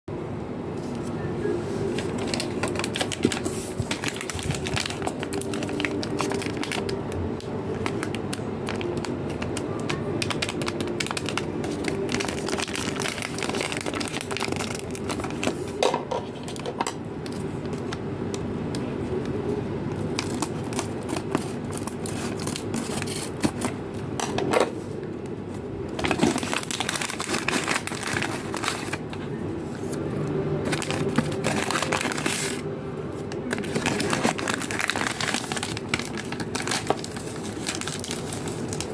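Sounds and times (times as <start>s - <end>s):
plastic packaging crinkling: 1.8s - 18.0s, 20.0s - 24.1s, 25.9s - 38.9s.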